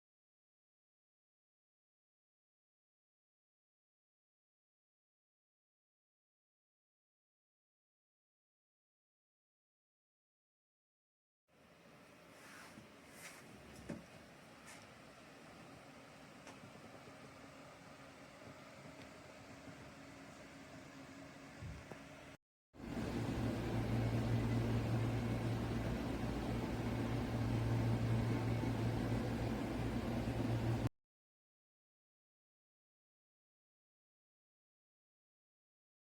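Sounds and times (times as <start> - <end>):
computer fans whirring: 11.6 - 30.9
soft rustles: 12.3 - 15.0.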